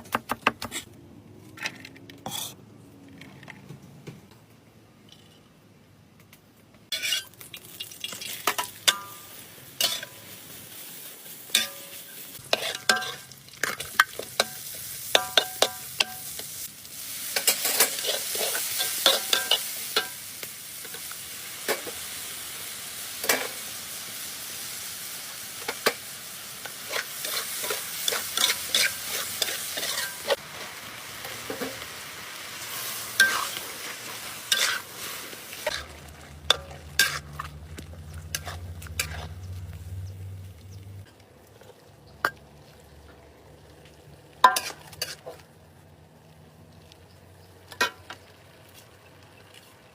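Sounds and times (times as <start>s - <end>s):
fish sizzling in hot oil: 6.9s - 40.8s.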